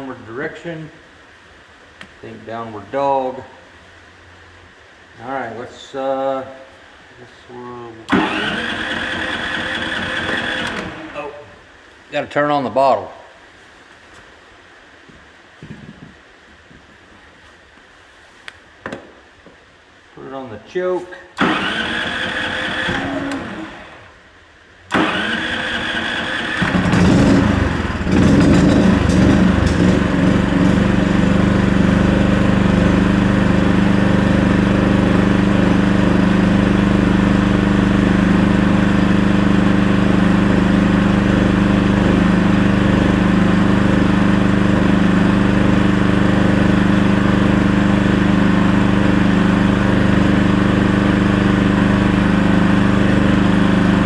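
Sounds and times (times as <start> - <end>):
generator running steadily: 7.5 - 11.6, 21.4 - 24.2, 24.9 - 54.0
generator being cranked: 8.1 - 11.1, 21.4 - 23.8, 24.9 - 27.3.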